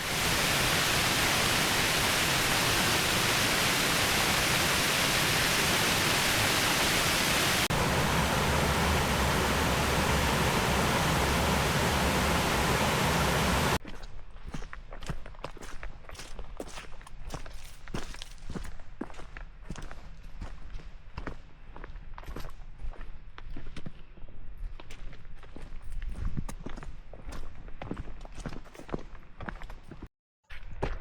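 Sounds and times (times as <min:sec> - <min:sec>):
waterfall rushing: 0:00.0 - 0:13.8.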